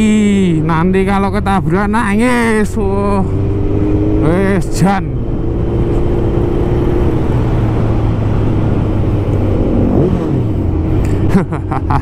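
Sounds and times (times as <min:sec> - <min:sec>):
road noise: 0:00.0 - 0:12.0
wind rushing: 0:05.1 - 0:11.0.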